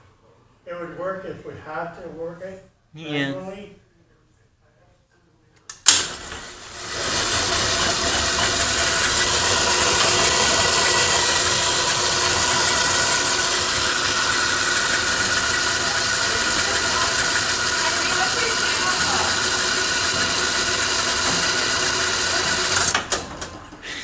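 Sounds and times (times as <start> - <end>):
garage door opener click and knock: 5.7 - 11.2, 19.3 - 23.8
garage door motor whirring: 5.8 - 24.0.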